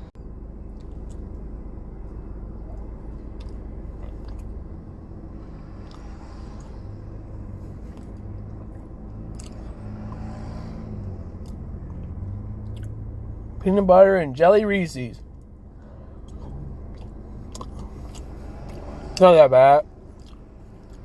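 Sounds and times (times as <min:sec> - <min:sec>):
steady low hum: 0:00.0 - 0:21.0
person chewing: 0:02.7 - 0:04.6, 0:07.8 - 0:09.7, 0:11.4 - 0:13.0, 0:16.2 - 0:18.9, 0:20.1 - 0:21.0.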